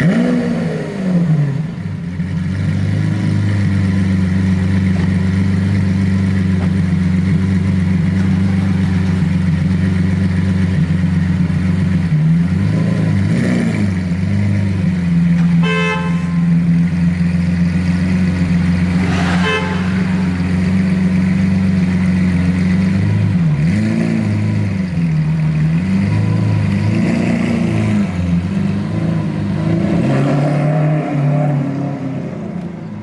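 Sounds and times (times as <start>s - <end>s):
car engine idling and revving: 0.0s - 33.0s
car horn toot: 8.1s - 9.4s, 15.4s - 16.8s, 18.9s - 21.2s.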